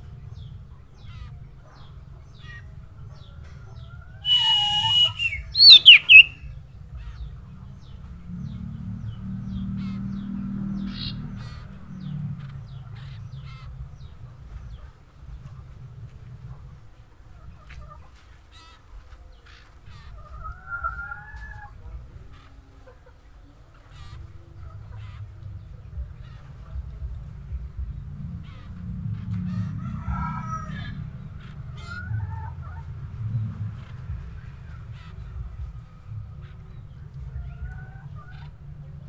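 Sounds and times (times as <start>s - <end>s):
rooster crowing: 4.3s - 6.3s.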